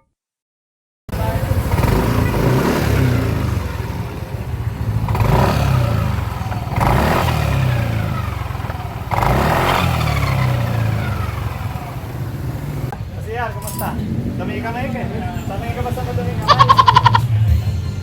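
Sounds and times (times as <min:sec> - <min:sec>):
scooter engine surging: 0:01.1 - 0:18.0.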